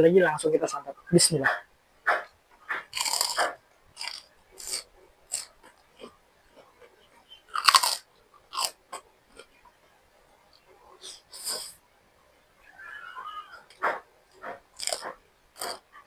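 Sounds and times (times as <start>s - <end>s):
person chewing crunchy food: 2.6s - 6.9s, 7.5s - 9.6s, 13.7s - 16.0s.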